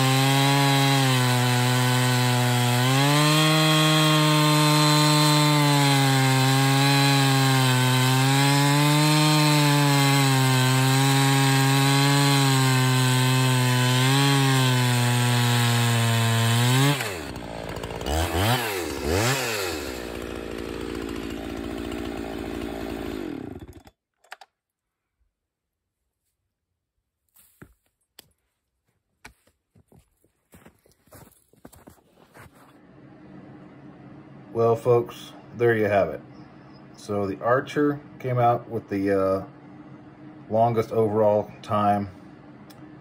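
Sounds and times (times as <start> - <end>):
chainsaw cutting at full throttle: 0.0 - 24.0.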